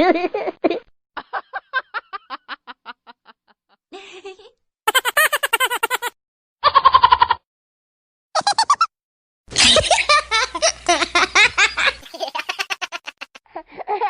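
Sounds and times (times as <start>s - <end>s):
recorded laughter: 1.2s - 6.1s
breathy snicker: 9.5s - 13.4s.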